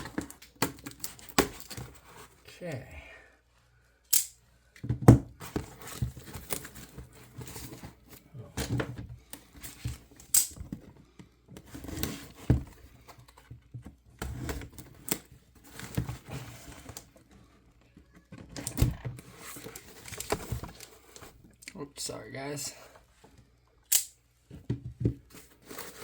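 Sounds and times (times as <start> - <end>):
packing material rustling: 19.2 - 21.4, 25.3 - 26.0.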